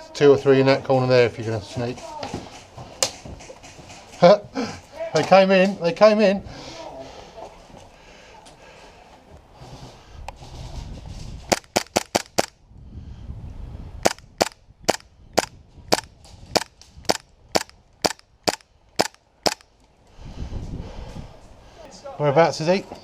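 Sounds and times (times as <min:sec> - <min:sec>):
airsoft gun shots: 0:11.5 - 0:12.5, 0:14.0 - 0:19.6.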